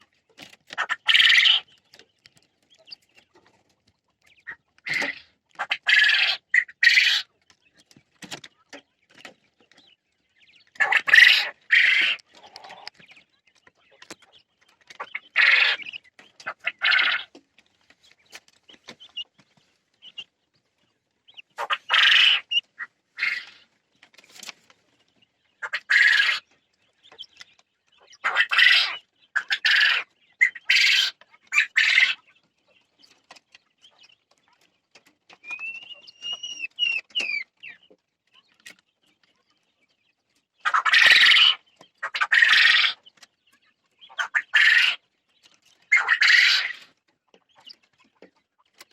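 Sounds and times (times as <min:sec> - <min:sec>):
quail harsh calls: 0:00.7 - 0:01.7, 0:04.3 - 0:07.3, 0:10.7 - 0:12.9, 0:15.0 - 0:17.4, 0:21.3 - 0:23.7, 0:25.6 - 0:26.5, 0:28.0 - 0:32.3, 0:40.6 - 0:43.1, 0:44.0 - 0:45.0, 0:45.9 - 0:46.9
thin whistled chirps: 0:35.4 - 0:37.8.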